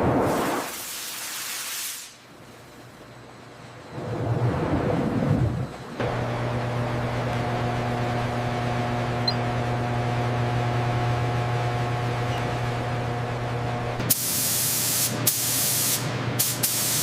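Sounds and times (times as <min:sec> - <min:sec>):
steady mechanical hum: 0:00.0 - 0:17.0.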